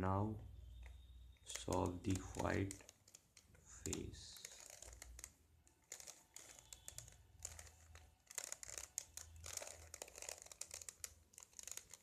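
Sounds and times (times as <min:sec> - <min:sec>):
plastic puzzle cube clicking: 0:01.5 - 0:12.0.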